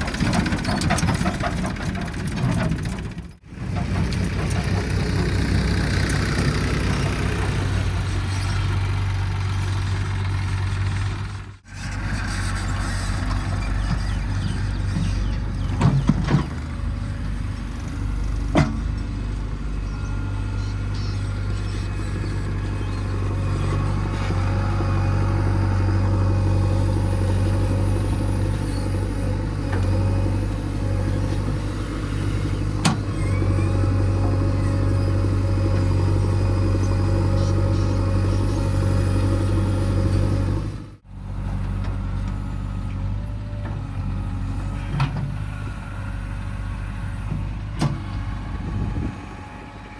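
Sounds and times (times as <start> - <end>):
heavy diesel engine running: 0.0 - 49.9.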